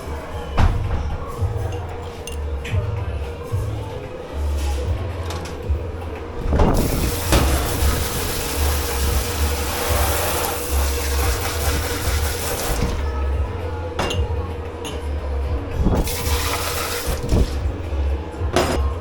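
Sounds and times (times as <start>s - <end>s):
low machine hum: 0.0s - 19.0s
water spraying hard: 6.7s - 13.0s, 15.9s - 17.8s.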